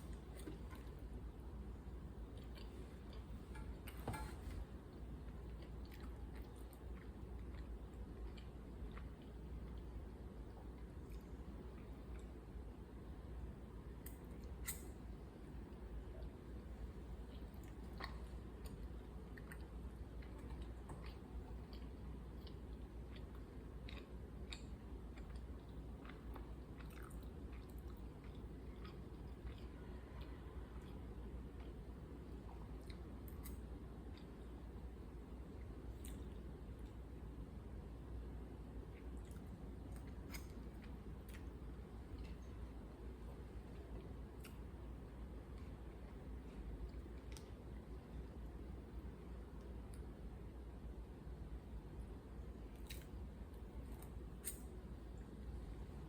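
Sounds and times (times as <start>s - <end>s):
person chewing food: 2.2s - 12.6s, 17.0s - 34.9s, 38.9s - 48.2s, 52.6s - 54.7s.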